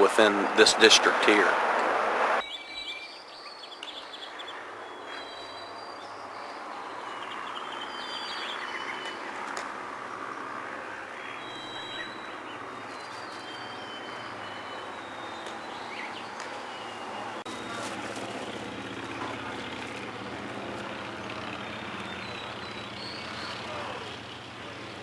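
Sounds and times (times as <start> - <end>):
birds chirping: 0.0 - 25.0
vehicle engine idling: 17.0 - 25.0.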